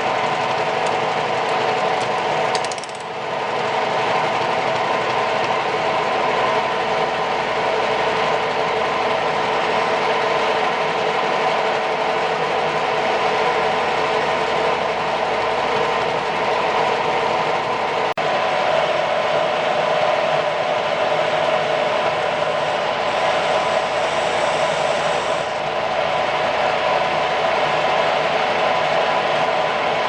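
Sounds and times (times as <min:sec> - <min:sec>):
drill press motor humming: 0:00.0 - 0:08.6, 0:13.2 - 0:27.2.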